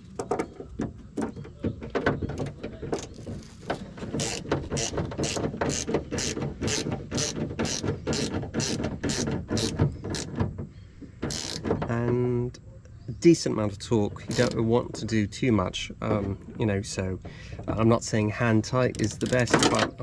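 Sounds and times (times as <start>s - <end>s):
hand ratchet clicking: 4.0s - 10.4s, 11.2s - 11.7s.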